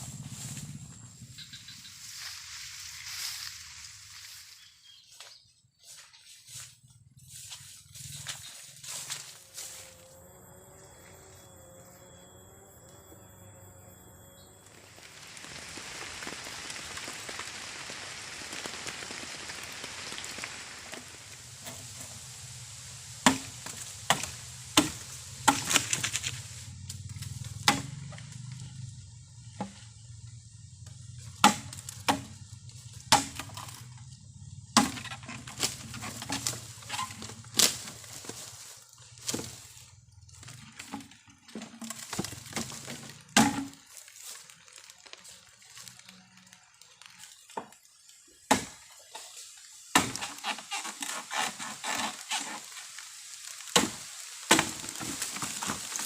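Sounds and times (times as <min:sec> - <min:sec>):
low steady rumble: 0:00.0 - 0:04.5, 0:06.7 - 0:43.9
bamboo being chopped: 0:23.2 - 0:26.4, 0:27.2 - 0:28.2, 0:31.3 - 0:33.9, 0:34.7 - 0:39.6, 0:40.7 - 0:44.9, 0:48.5 - 0:52.6, 0:53.4 - 0:56.0.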